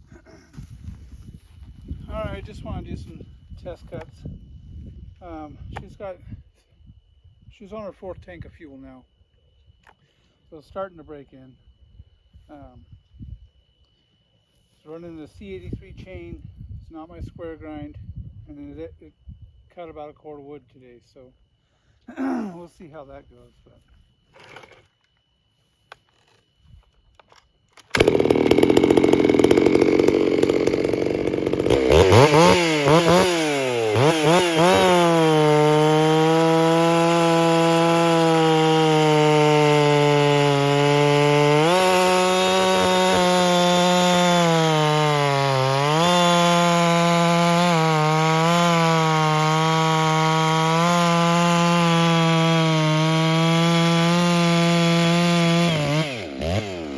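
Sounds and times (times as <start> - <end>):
chainsaw revving and cutting: 27.9 - 56.9.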